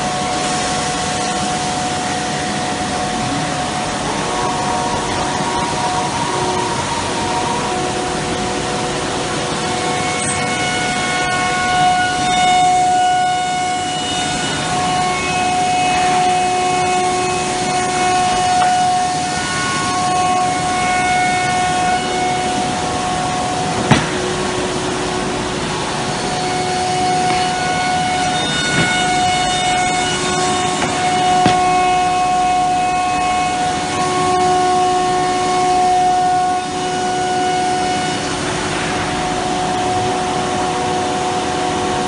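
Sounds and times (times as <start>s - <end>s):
cnc router whining: 0.0s - 42.0s
sharp knock: 23.8s - 24.4s, 28.5s - 29.4s, 30.8s - 31.9s.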